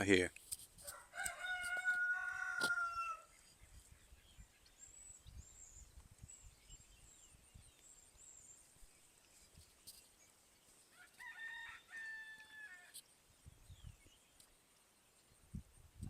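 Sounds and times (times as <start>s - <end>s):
small birds chirping: 0.0s - 11.7s, 12.5s - 16.0s
rooster crowing: 0.8s - 3.3s, 10.9s - 13.0s.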